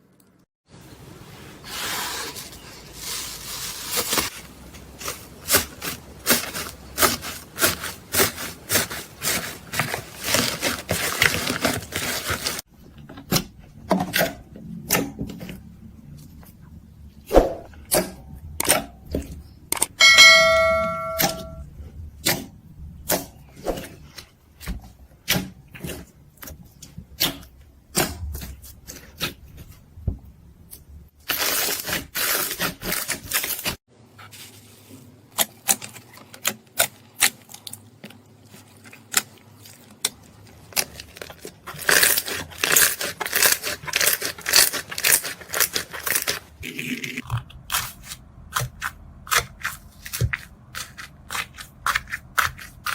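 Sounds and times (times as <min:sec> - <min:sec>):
ringing ding: 0:20.0 - 0:21.6
slime crackling and popping: 0:40.0 - 0:46.6.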